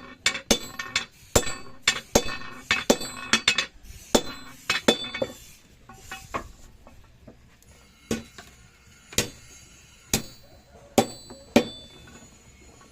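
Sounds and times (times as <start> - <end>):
hammer striking steel: 0.0 - 6.5, 8.1 - 8.5, 9.1 - 9.5, 10.1 - 12.1.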